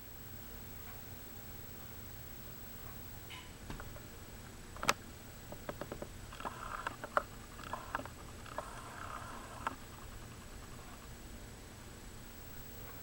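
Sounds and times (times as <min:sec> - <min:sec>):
sharp clicks: 0:04.8 - 0:10.2.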